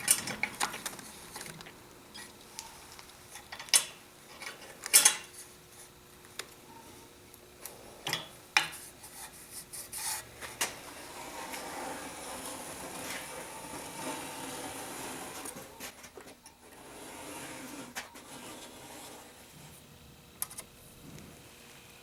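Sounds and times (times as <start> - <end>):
clicks and knocks of parts handled: 0.0 - 5.3
rubbing and scraping: 8.7 - 16.0, 16.7 - 19.8.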